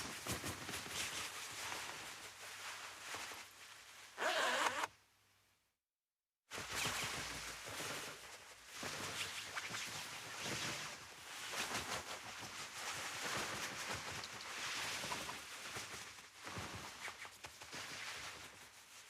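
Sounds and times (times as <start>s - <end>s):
nylon jacket rustling: 0.6s - 4.9s.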